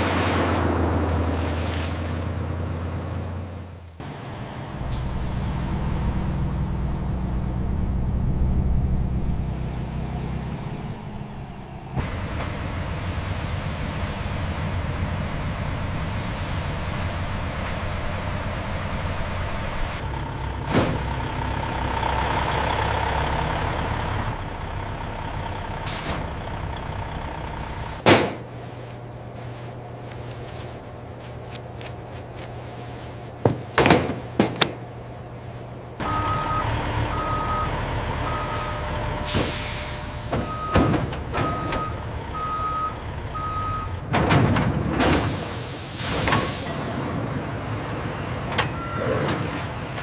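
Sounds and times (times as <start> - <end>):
industrial machine and vehicle noise: 0.0 - 50.0
reversing alarm beeping: 36.0 - 44.0, 48.7 - 49.1.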